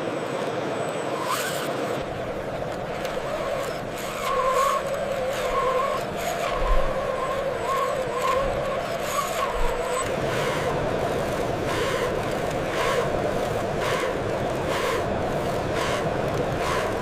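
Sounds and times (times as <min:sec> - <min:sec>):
small electric motor whine: 0:00.0 - 0:17.0.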